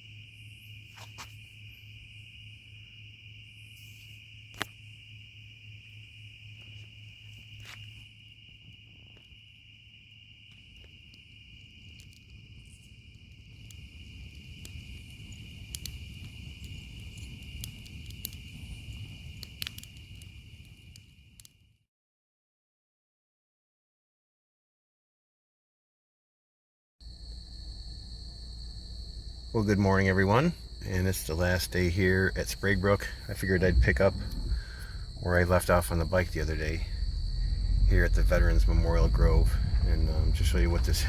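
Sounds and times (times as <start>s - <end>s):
crickets trilling: 0.0s - 21.5s, 27.0s - 41.0s
sharp clicks and cracks: 15.7s - 16.4s
low rushing noise: 30.6s - 41.0s.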